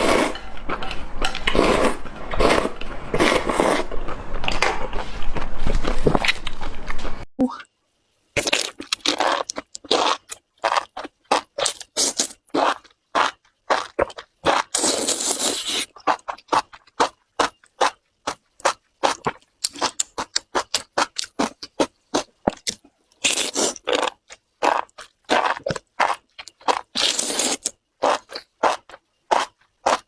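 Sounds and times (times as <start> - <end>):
slurping and smacking: 8.4 - 30.0
wet crunchy chewing: 8.4 - 30.0.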